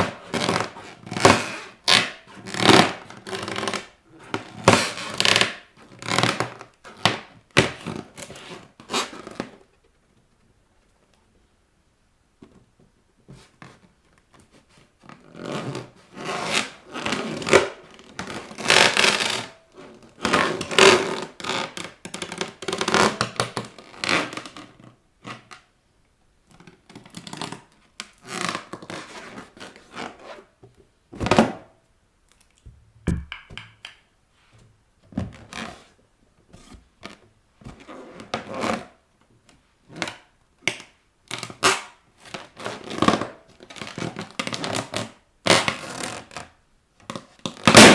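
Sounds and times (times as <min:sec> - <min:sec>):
balloons popping: 0:47.6 - 0:47.9.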